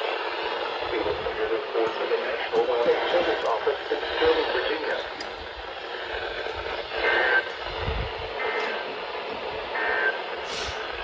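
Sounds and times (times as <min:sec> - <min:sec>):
radio static: 0:00.0 - 0:11.0.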